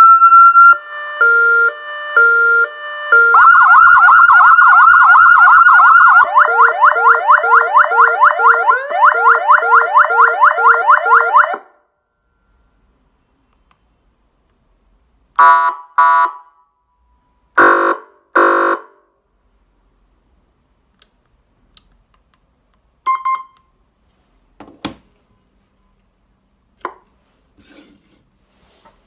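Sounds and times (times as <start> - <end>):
electronic siren horn blasts: 0.0 - 11.6, 17.6 - 18.9.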